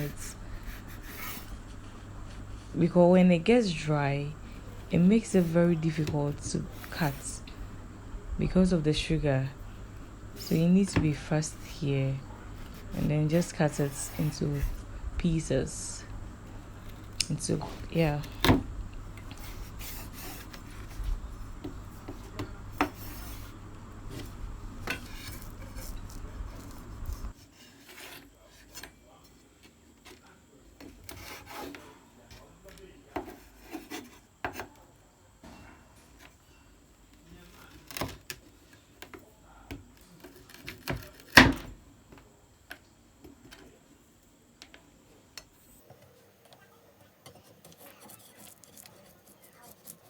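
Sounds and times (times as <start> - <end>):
knife scraping hard sugar: 0.0 - 1.9, 10.0 - 14.9, 19.2 - 28.8, 47.3 - 50.0
knife cutting brittle on board: 47.4 - 50.0.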